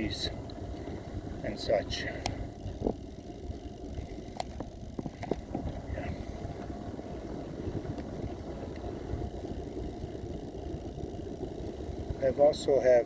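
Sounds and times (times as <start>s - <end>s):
bicycle rolling on asphalt: 0.0s - 13.0s
wind on microphone: 2.2s - 12.3s.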